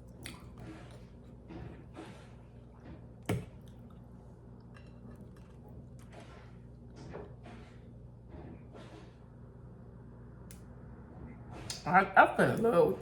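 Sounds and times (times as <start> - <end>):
person chewing food: 0.0 - 1.4, 3.3 - 6.1.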